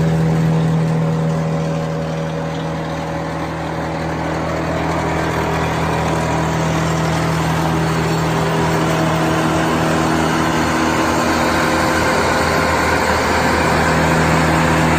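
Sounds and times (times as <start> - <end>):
wood chipper engine running: 0.0 - 14.9.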